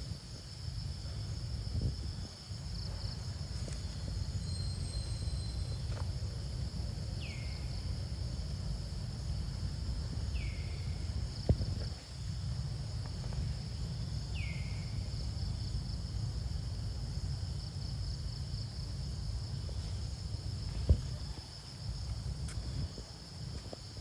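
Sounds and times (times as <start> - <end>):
high-pitched insect drone: 3.0 - 9.3.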